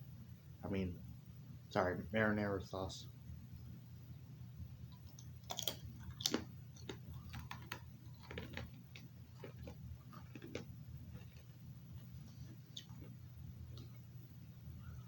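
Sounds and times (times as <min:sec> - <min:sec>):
low steady hum: 0:00.0 - 0:15.0
chips crunching while chewed: 0:04.9 - 0:14.0.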